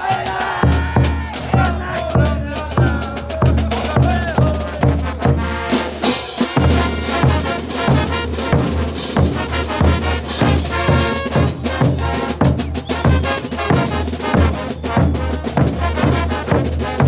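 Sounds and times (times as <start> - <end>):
bass drum beat: 0.0 - 17.0
percussion: 0.0 - 17.0
massed brass: 3.7 - 17.0.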